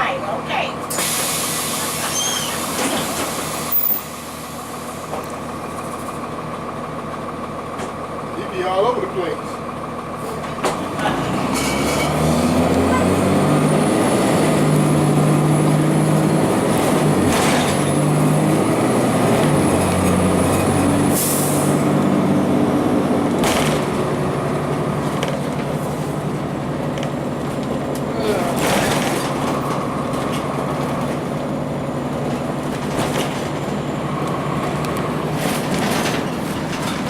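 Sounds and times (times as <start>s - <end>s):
bus diesel engine: 0.0s - 37.0s.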